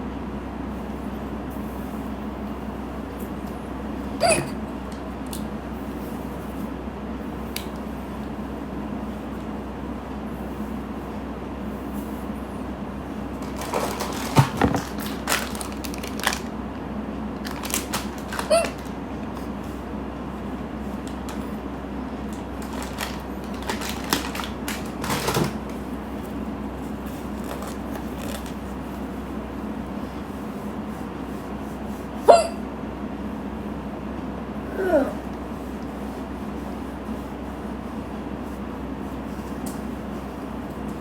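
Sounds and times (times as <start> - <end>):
short hiccup: 4.2 - 4.6, 18.4 - 18.8, 32.2 - 32.7
short rustles and knocks: 13.4 - 15.7.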